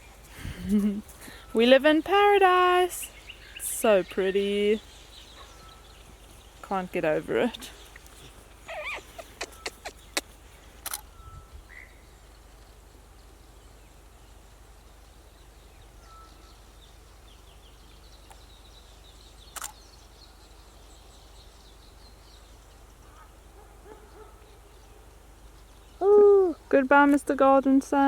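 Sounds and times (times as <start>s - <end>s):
faint bird calls: 7.6s - 12.1s
sharp clicks: 8.8s - 11.1s, 19.5s - 19.8s.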